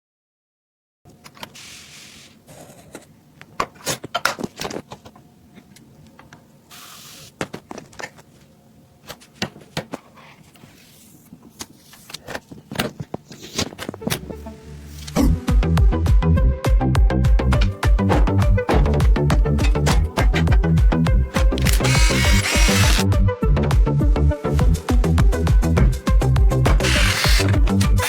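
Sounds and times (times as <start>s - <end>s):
packaging sliding or rustling: 21.3s - 23.0s, 26.7s - 28.0s.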